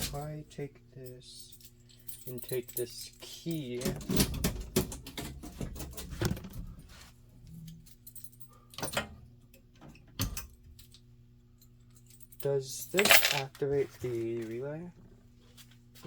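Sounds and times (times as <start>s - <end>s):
faint steady hum: 0.0s - 16.0s
keys jangling: 1.3s - 5.2s, 11.8s - 13.5s.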